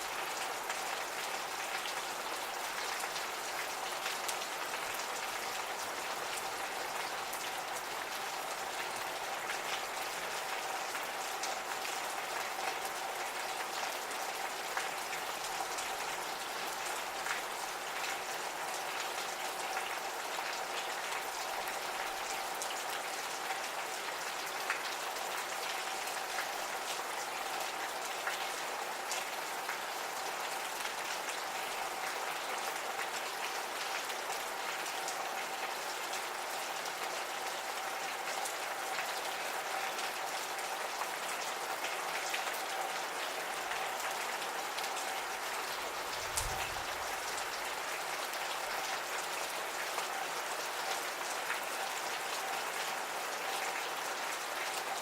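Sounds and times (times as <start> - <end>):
rain drops ticking on surfaces: 0.0 - 55.0.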